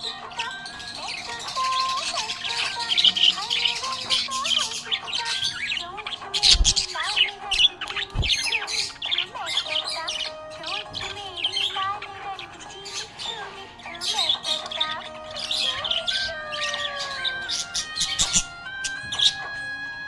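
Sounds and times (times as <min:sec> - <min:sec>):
budgie chirping and chattering: 0:00.0 - 0:19.5
background music: 0:00.0 - 0:20.0
dull thumps: 0:07.5 - 0:08.5.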